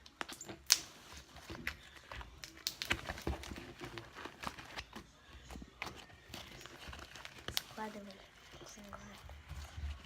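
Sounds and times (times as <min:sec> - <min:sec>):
slime squishing with clicks and pops: 0:00.0 - 0:01.0, 0:01.6 - 0:03.2.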